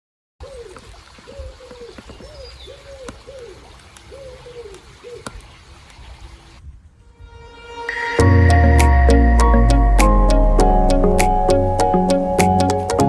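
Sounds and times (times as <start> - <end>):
dove cooing: 0.4 - 6.6
faint clicks: 3.0 - 6.0.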